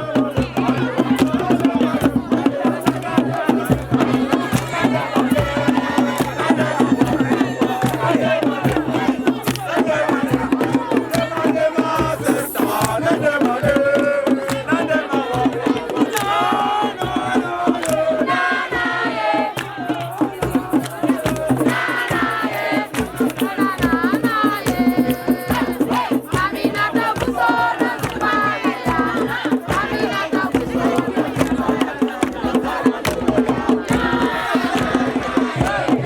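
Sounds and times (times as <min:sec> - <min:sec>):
fast rattling percussion: 0:00.0 - 0:36.0
voices singing: 0:00.0 - 0:36.0.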